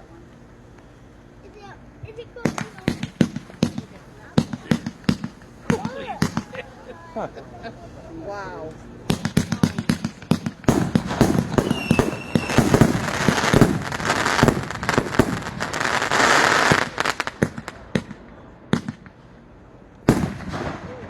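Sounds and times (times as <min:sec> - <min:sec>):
fireworks bangs and crackling: 0:02.4 - 0:07.8, 0:09.0 - 0:19.3, 0:20.0 - 0:21.0.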